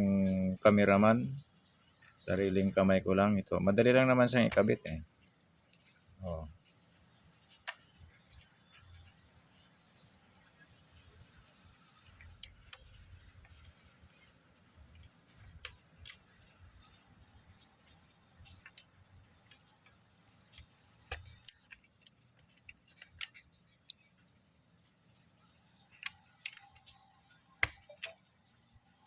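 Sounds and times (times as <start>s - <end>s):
keyboard plastic parts clicking: 4.3s - 5.0s, 7.4s - 24.4s, 25.4s - 28.4s.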